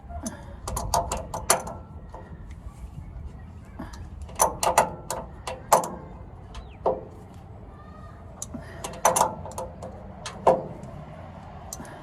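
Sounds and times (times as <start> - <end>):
hand tools clanking on steel: 0.2 - 2.4, 3.9 - 7.2, 8.4 - 11.0.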